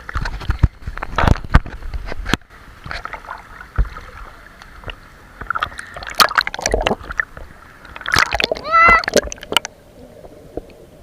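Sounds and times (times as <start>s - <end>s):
pool water splashing: 0.0s - 11.0s.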